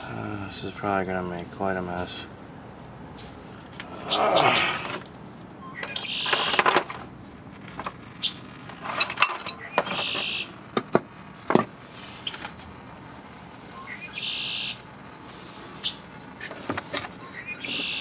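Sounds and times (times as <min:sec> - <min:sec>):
short raspy bursts: 0:03.8 - 0:05.0
metal tools clinking on engine: 0:04.8 - 0:10.4.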